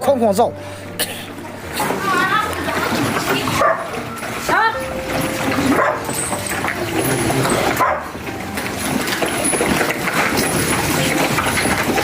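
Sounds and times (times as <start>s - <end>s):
dogs barking: 2.6s - 4.2s, 5.3s - 8.4s.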